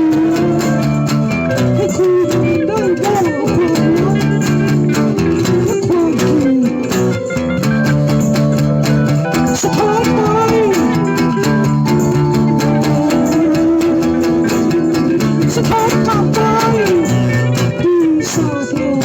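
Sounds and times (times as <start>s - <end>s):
guitar-led song: 0.0s - 19.0s.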